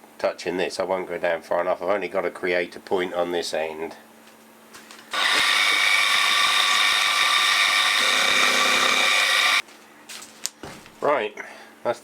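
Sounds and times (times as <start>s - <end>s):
milling machine cutting metal: 5.1s - 9.6s.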